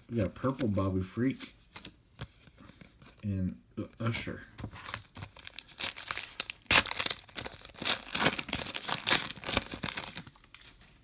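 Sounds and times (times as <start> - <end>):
foil wrapper tearing and crinkling: 4.8 - 10.8.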